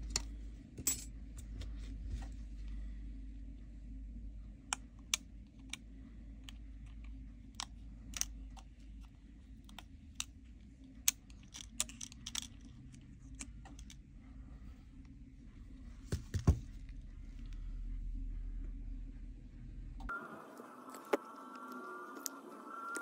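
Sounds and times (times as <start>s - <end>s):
low steady hum: 0.0s - 23.0s
small tools clicking and tapping: 11.1s - 14.0s.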